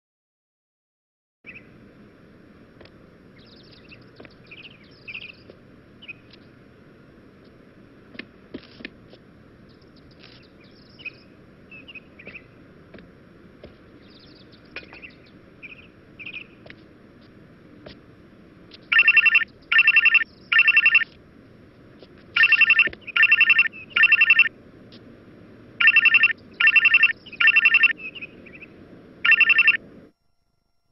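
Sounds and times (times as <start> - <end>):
low hiss: 1.5 - 30.9
faint chirps: 3.4 - 6.5, 9.6 - 12.6, 14.0 - 16.6, 22.4 - 24.5, 25.8 - 29.8
telephone ringtone trills: 18.9 - 21.1, 22.4 - 24.5, 25.8 - 28.0, 29.2 - 29.8.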